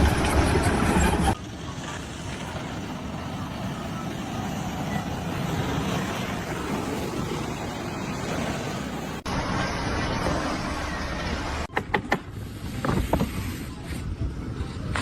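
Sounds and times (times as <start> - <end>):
steady machinery noise: 0.0 - 11.7.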